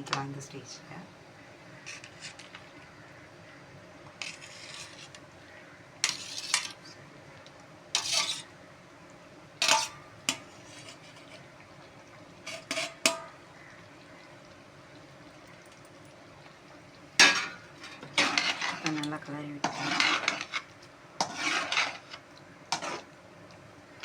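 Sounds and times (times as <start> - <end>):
metal spoon scraping a pan: 1.8 - 2.8, 4.1 - 5.3, 6.0 - 6.9, 7.9 - 8.5, 9.6 - 11.5, 12.4 - 13.4, 17.2 - 23.2.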